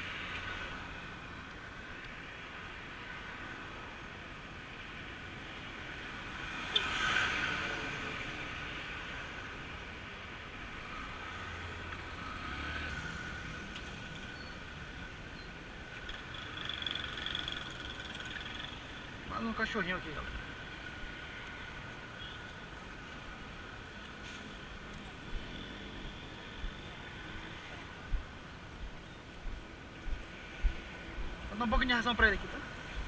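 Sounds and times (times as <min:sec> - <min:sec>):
street background noise: 0:00.0 - 0:33.0
vehicle passing: 0:10.9 - 0:14.3.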